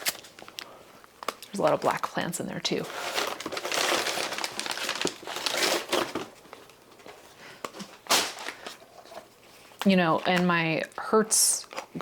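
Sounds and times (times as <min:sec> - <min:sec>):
packaging crinkling and rustling: 0:02.6 - 0:10.8.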